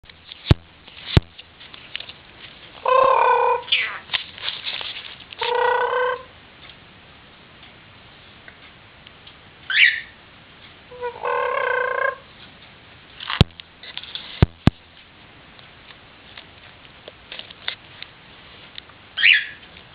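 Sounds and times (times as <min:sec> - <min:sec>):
parrot harsh calls: 0:02.8 - 0:04.0, 0:09.7 - 0:10.2, 0:10.9 - 0:12.2, 0:19.2 - 0:19.6
parrot rising chirp: 0:02.8 - 0:04.0, 0:09.7 - 0:10.2, 0:19.2 - 0:19.6.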